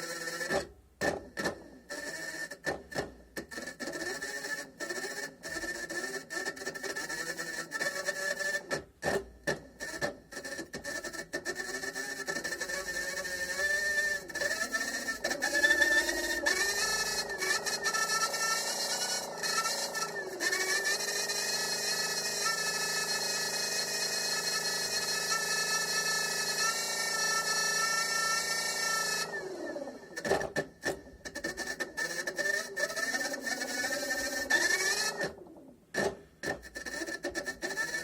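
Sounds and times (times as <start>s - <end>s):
motor humming: 12.2s - 22.7s.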